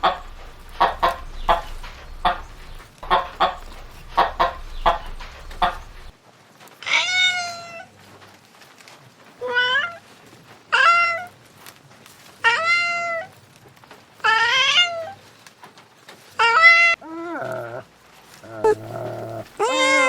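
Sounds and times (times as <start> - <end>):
cat meowing: 18.6 - 20.0.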